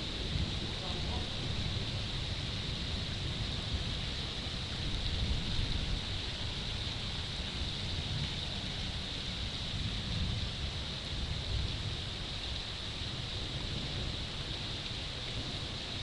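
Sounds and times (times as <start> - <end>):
wind buffeting microphone: 0.0 - 12.2
rain hiss: 0.0 - 16.0.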